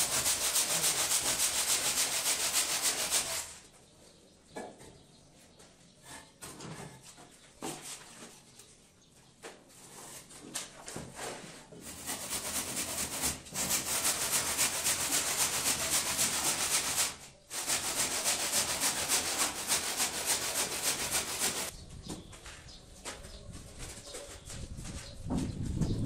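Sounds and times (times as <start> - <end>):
fast scratchy rubbing strokes: 0.0 - 3.7, 11.4 - 21.8.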